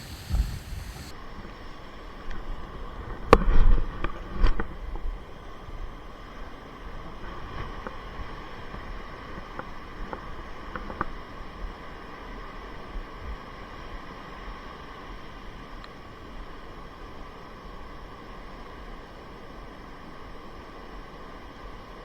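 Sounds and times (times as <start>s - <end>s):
wind rumbling on microphone: 0.0s - 15.4s.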